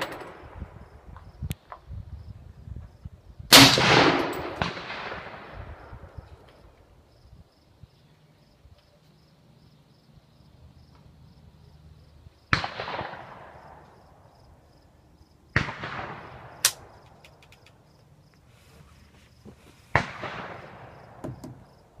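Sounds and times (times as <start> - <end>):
gunshots: 3.5 - 5.5, 12.5 - 13.6, 15.6 - 16.8, 19.9 - 21.2.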